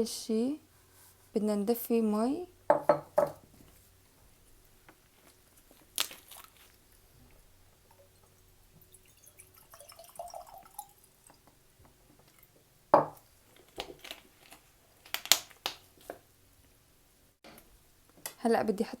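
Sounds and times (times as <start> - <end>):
kitchenware knocking and clinking: 2.7 - 3.4, 13.0 - 13.2
water pouring into a pot: 7.8 - 11.6.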